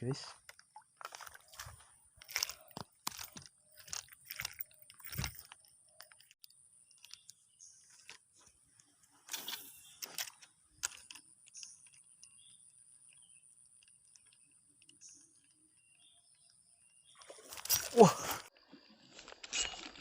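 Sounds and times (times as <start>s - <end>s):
handling clicks and rustles: 0.3s - 15.8s.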